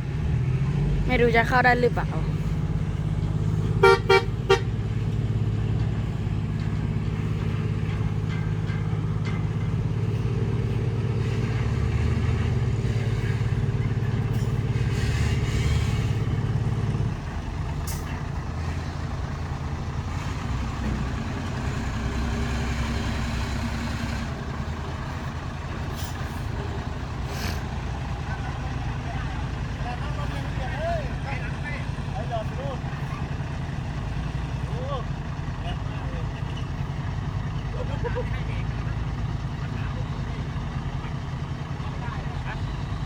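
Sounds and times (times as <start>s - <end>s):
dump truck engine running: 0.0s - 43.0s
horn toots: 3.8s - 4.8s.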